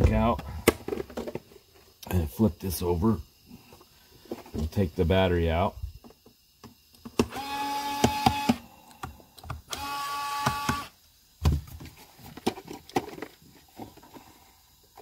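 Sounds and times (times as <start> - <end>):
small electric motor whirring: 7.2 - 8.6, 9.6 - 11.0.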